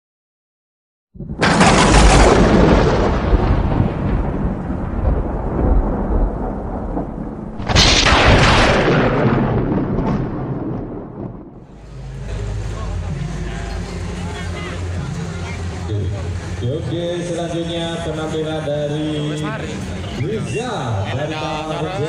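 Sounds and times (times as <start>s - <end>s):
thunder-like booms with heavy bass: 1.2s - 12.5s
loud crash rumbling: 1.2s - 14.0s.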